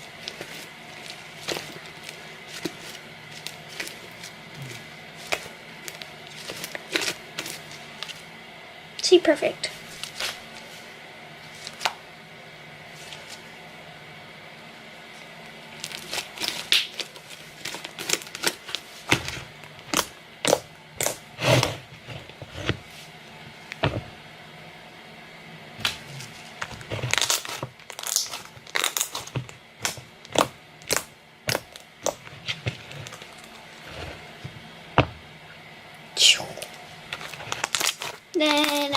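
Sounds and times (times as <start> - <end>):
slime popping and crackling: 15.8 - 21.2, 26.9 - 32.2, 36.6 - 38.9.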